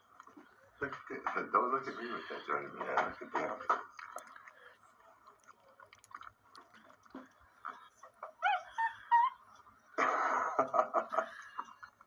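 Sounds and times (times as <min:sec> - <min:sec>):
monkey eating clicks and smacks: 0:02.8 - 0:08.4, 0:11.2 - 0:12.0.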